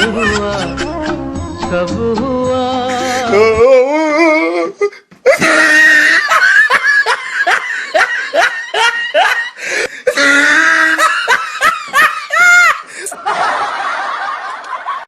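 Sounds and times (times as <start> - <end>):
loud laughter in bursts: 0.0 - 1.2, 5.3 - 15.0.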